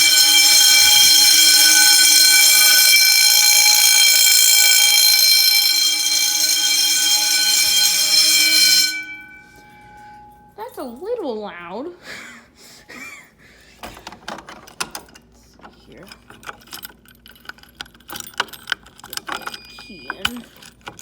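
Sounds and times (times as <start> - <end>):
fire alarm horns steady tone: 0.0 - 10.6, 19.3 - 20.6.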